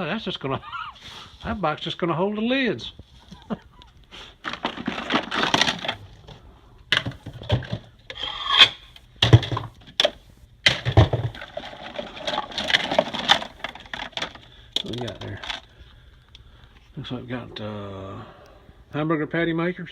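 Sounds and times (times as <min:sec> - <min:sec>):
plastic containers scraping: 0:04.3 - 0:15.8
knocks and thuds: 0:09.2 - 0:09.8, 0:10.6 - 0:11.6.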